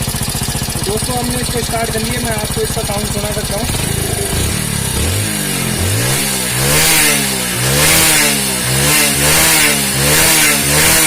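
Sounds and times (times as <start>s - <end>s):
motorcycle engine revving: 0.0s - 11.0s
man talking: 0.8s - 4.6s.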